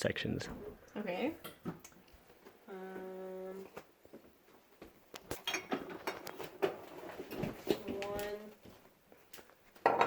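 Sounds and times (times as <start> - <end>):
food containers clicking and knocking: 5.2 - 8.0.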